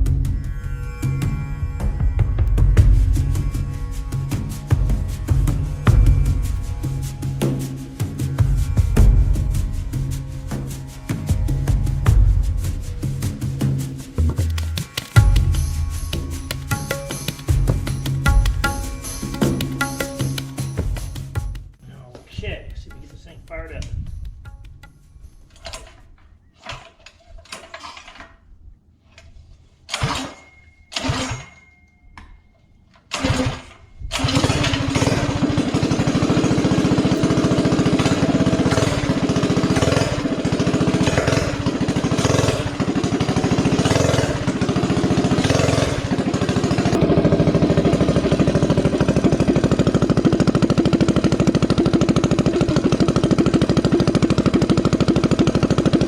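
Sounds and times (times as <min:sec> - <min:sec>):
mini bike engine revving: 0:29.9 - 0:31.6, 0:33.1 - 0:56.0.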